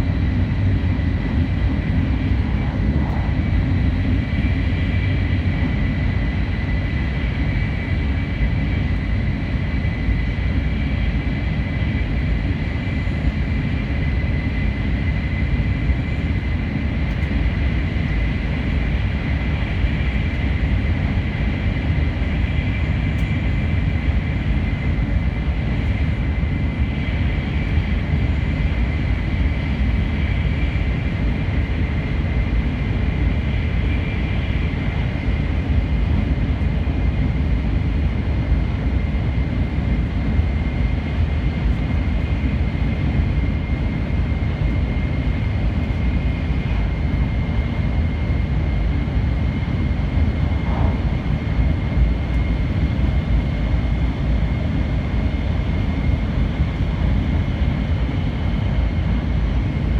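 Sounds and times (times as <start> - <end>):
train running rumble: 0.0 - 59.8
high whine: 49.6 - 53.4.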